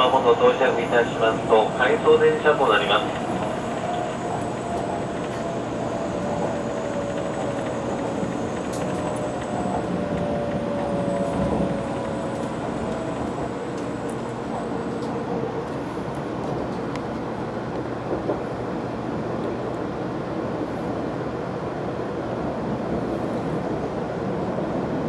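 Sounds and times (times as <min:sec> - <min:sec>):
faint whine dropping in pitch: 0:00.0 - 0:15.5
train cabin rumble: 0:00.0 - 0:15.6.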